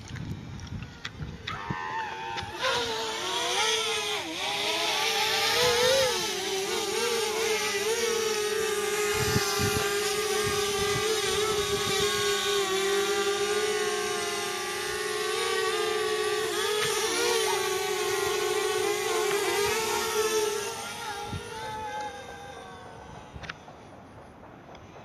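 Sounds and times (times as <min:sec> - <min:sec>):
drone propellers whining: 0:00.4 - 0:25.0
gusty wind: 0:08.6 - 0:12.7.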